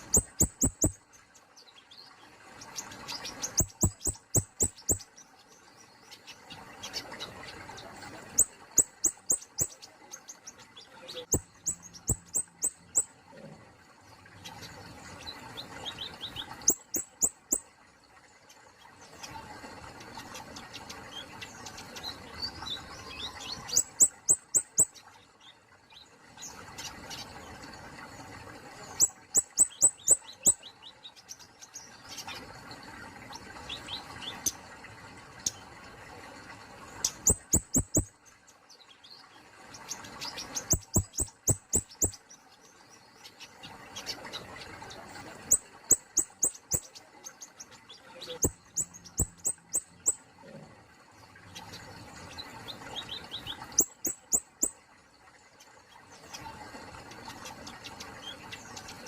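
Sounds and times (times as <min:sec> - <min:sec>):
soft bird chirps: 0:00.0 - 0:13.6, 0:14.3 - 0:27.6, 0:28.7 - 0:34.7, 0:36.9 - 0:50.7, 0:51.3 - 0:59.0
bird singing sharp high notes: 0:03.5 - 0:05.0.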